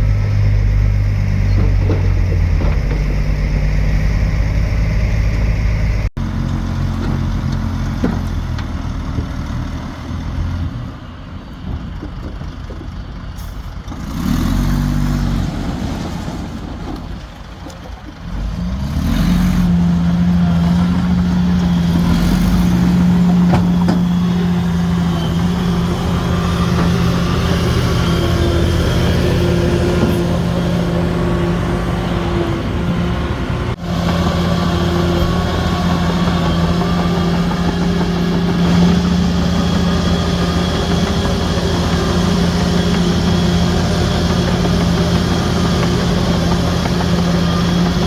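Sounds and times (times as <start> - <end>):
diesel machinery engine: 0.0 - 48.0.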